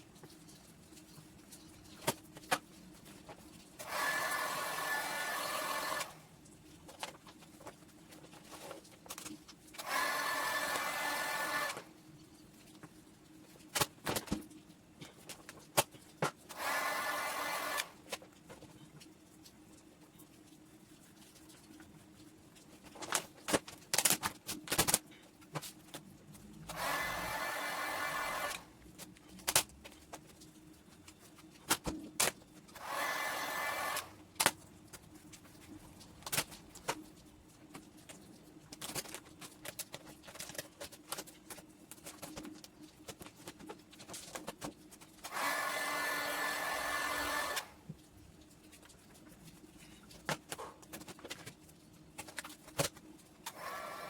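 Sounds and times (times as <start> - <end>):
hot-air blower whirring: 3.8 - 6.3, 9.8 - 11.9, 16.5 - 18.0, 26.7 - 28.7, 32.8 - 34.2, 45.2 - 47.8, 53.5 - 54.0.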